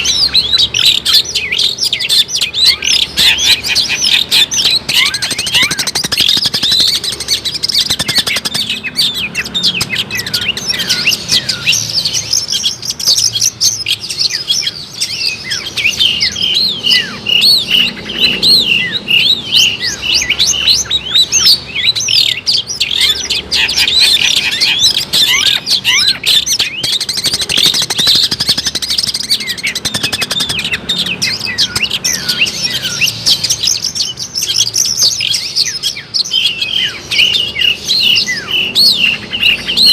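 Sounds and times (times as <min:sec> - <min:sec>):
bird singing high chirps: 0:00.0 - 0:39.9.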